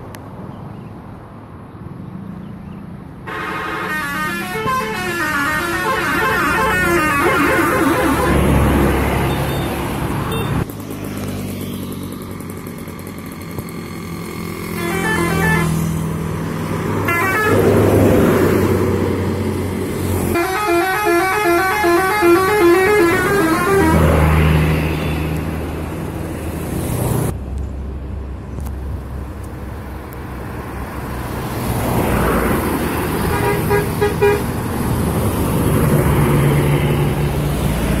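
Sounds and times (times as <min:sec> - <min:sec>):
bus engines running: 0:00.0 - 0:38.0
traffic passing: 0:00.0 - 0:38.0
bus musical horns: 0:03.3 - 0:10.6, 0:14.6 - 0:16.1, 0:17.0 - 0:18.8, 0:20.2 - 0:25.4, 0:33.1 - 0:34.6.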